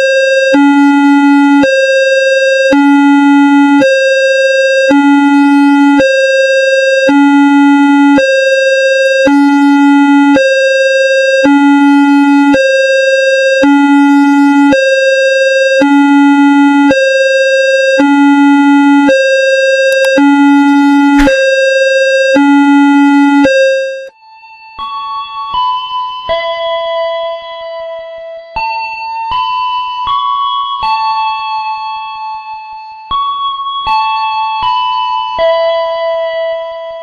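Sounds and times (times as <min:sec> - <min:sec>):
level crossing alarm tones: 0:00.0 - 0:24.1.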